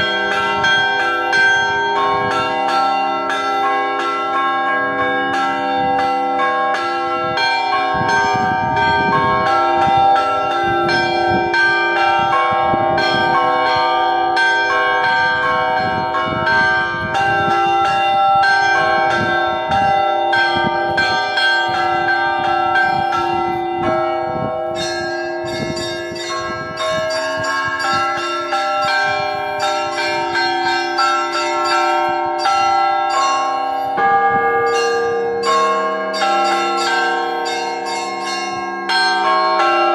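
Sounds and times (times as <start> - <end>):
large church bells ringing: 0.0 - 39.9
small church bells striking rapidly: 0.0 - 39.9.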